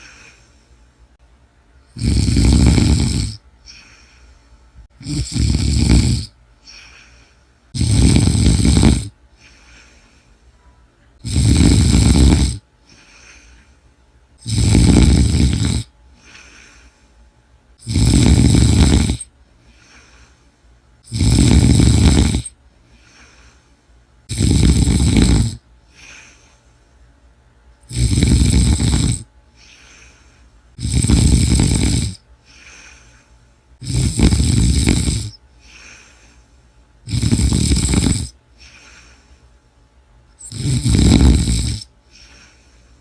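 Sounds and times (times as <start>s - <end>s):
faint breaths: 0.0s - 43.0s
person snoring loudly: 1.9s - 4.0s, 5.0s - 9.2s, 11.2s - 12.6s, 14.4s - 16.8s, 17.8s - 19.3s, 21.0s - 22.6s, 24.3s - 26.3s, 27.9s - 30.1s, 30.8s - 33.1s, 33.8s - 36.2s, 37.1s - 39.2s, 40.4s - 42.6s.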